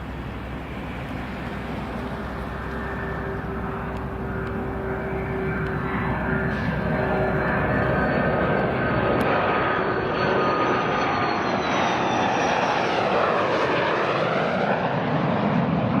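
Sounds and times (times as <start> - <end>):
jet engines roaring with whine: 0.0 - 16.0.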